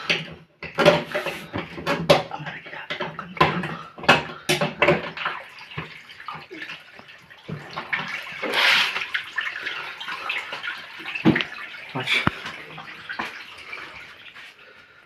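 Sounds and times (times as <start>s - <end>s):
sharp knocks and clatters: 0.0s - 6.0s
water pouring and splashing: 0.0s - 15.0s.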